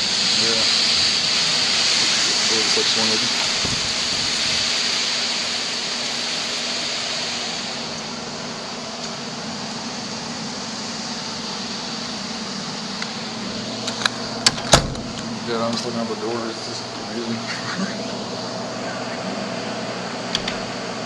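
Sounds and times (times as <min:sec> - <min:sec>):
heavy rain: 0:00.0 - 0:16.1
wind: 0:00.2 - 0:16.0.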